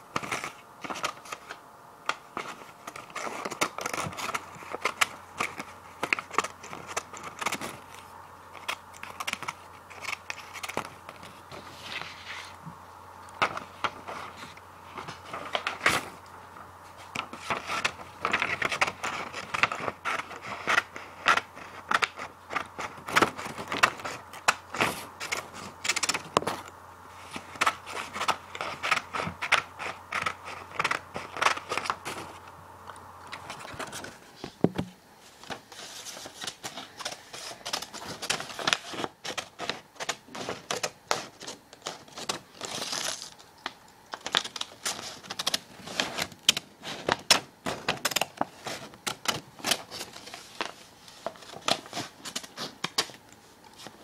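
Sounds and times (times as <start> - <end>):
scissors cutting paper: 0.1 - 11.3, 17.1 - 32.4, 35.4 - 43.4.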